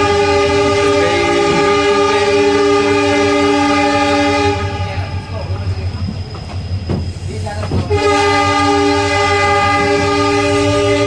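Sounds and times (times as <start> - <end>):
train horn blast: 0.0 - 5.2, 7.9 - 11.0
moving train rumble: 0.0 - 11.0.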